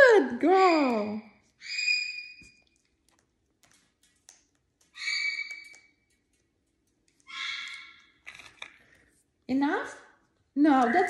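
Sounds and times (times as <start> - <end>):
parrot calling: 1.6 - 2.6, 4.9 - 5.9, 7.2 - 8.1.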